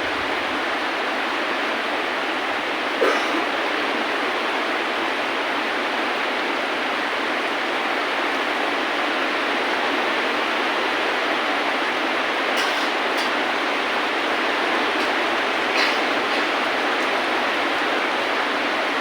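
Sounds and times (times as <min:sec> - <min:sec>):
steady rain: 0:00.0 - 0:19.0.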